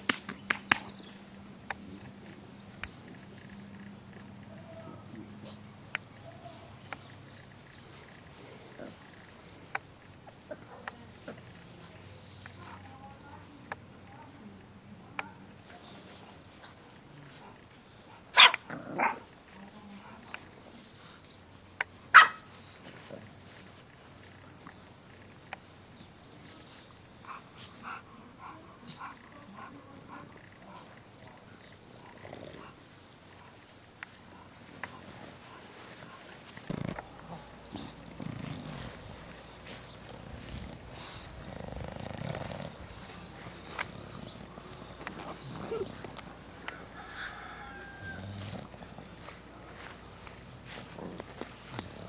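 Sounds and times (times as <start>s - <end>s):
dog barking: 18.4s - 19.2s, 22.1s - 22.5s
puppies grunting: 27.0s - 52.0s.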